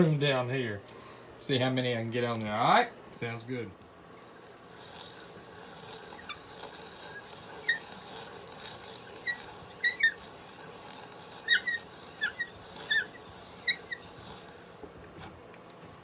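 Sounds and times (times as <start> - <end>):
short high squeaks: 4.2 - 14.8.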